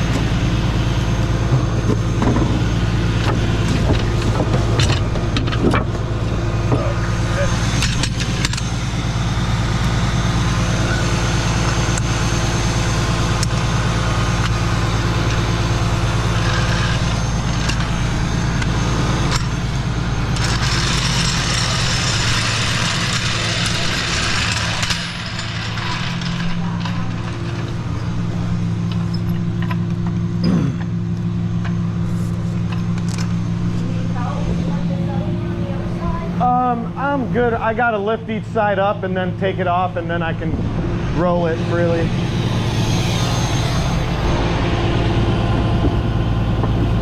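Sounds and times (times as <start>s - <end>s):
truck engine running: 0.0s - 47.0s.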